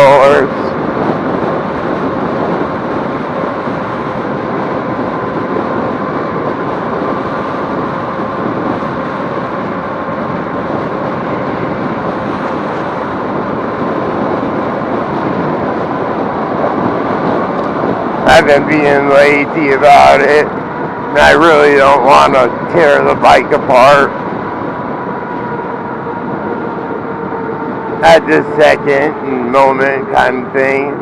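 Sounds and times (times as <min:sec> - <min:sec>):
electric bike road and wind noise: 0:00.0 - 0:31.0
faint steady whine: 0:00.0 - 0:31.0.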